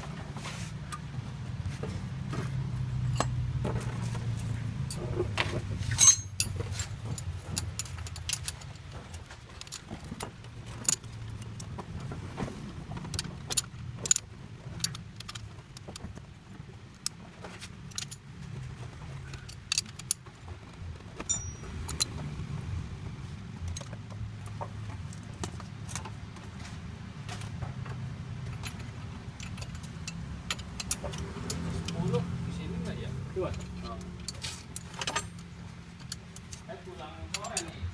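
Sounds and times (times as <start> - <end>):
metallic clinks and jingles: 5.9 - 10.0, 21.2 - 22.2, 33.4 - 36.7.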